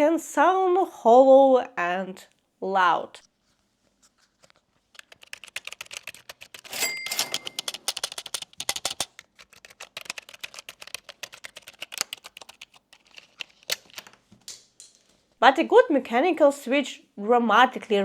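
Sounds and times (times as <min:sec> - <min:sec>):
typing on mechanical keyboard: 0:04.4 - 0:14.2
brief ringing tone: 0:06.8 - 0:07.6.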